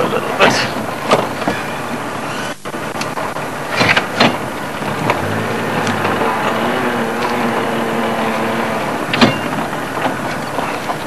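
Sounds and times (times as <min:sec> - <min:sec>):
vehicle and wind noise: 0:00.0 - 0:11.0
engine hum: 0:02.7 - 0:11.0.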